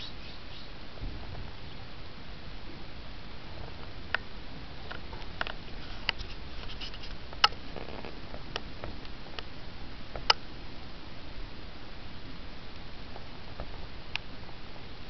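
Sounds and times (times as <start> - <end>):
bird chirps: 0.0 - 0.8
steady background hiss: 0.0 - 15.0.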